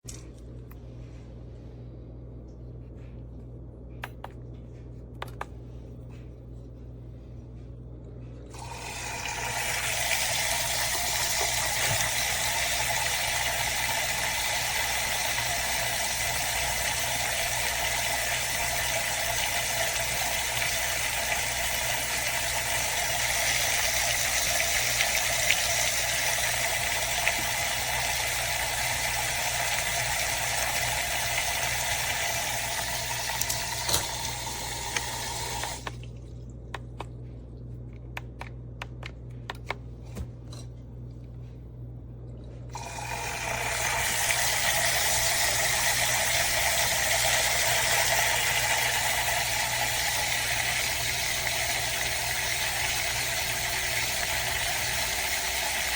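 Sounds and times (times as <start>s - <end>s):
coffee maker water hissing: 8.5s - 36.0s, 42.7s - 55.9s.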